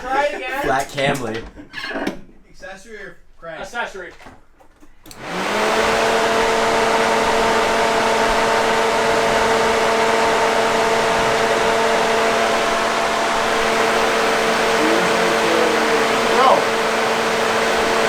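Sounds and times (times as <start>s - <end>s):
radiator cooling fans running: 9.4s - 18.0s.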